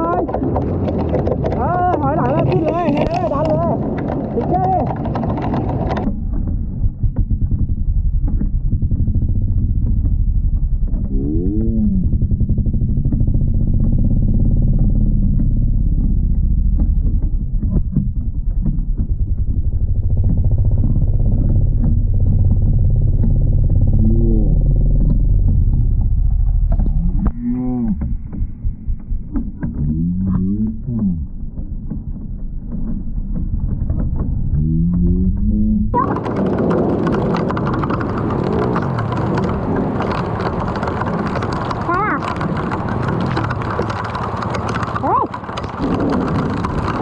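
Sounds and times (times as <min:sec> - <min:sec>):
vehicle engine running and revving: 0:07.6 - 0:27.4.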